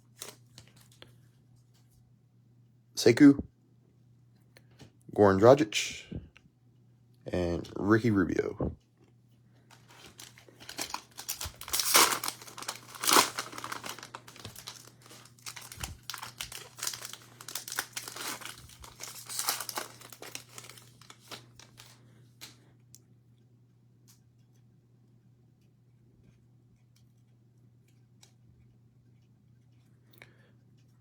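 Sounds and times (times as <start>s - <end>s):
cellophane wrapper tearing and crinkling: 0.0s - 1.0s, 9.7s - 22.0s
faint steady hum: 0.0s - 31.0s.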